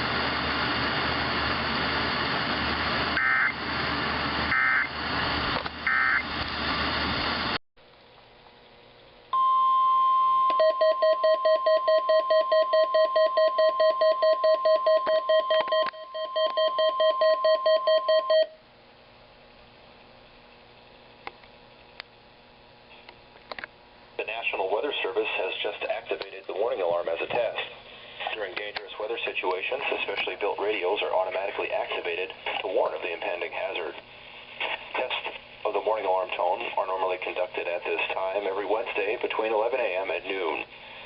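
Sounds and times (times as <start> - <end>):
radio static: 0.0 - 7.6, 24.2 - 41.0
receiver beeping: 3.2 - 3.6, 4.5 - 4.9, 5.9 - 6.3, 9.4 - 18.6
warning alarm tone: 3.2 - 3.6, 4.5 - 5.0, 5.9 - 6.3.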